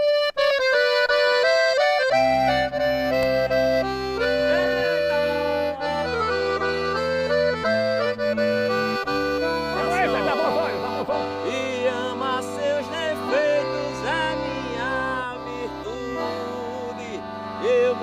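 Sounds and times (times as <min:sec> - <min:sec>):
accordion bass chords: 0:00.0 - 0:18.0
accordion melody: 0:00.0 - 0:18.0.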